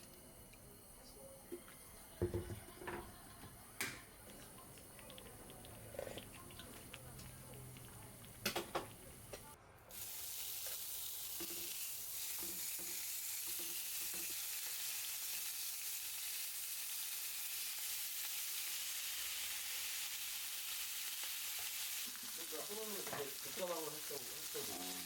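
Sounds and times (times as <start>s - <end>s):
food sizzling in a pan: 8.5s - 25.0s.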